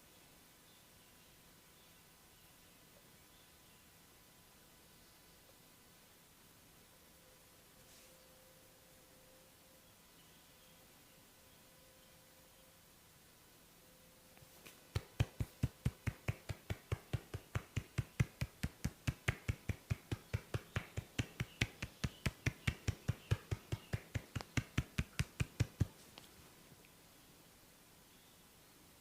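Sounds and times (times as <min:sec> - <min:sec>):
hands slapping head: 0:14.4 - 0:26.0.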